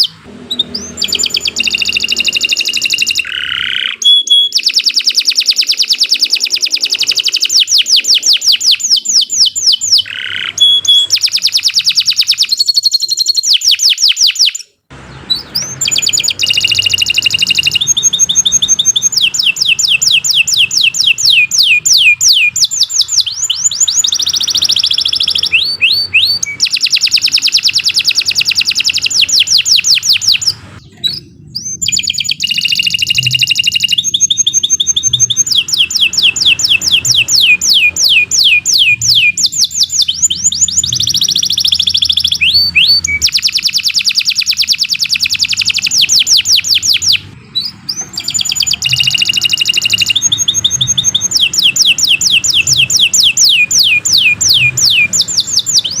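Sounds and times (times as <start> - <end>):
canary singing trills: 0.0 - 56.0.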